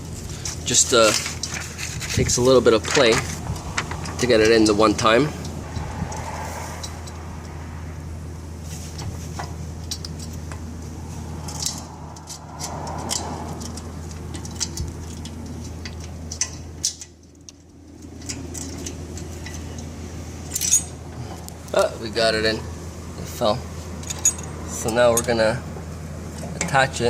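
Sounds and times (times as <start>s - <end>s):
steady low hum: 0.0s - 27.0s
metal chain clinking and rattling: 11.4s - 21.0s, 24.0s - 24.6s.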